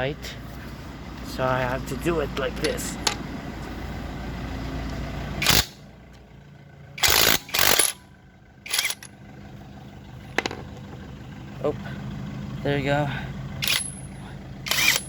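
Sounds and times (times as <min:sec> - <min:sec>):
impact wrench bursts: 0:05.4 - 0:05.8, 0:07.0 - 0:08.0, 0:08.7 - 0:09.1, 0:13.6 - 0:14.0, 0:14.6 - 0:15.0.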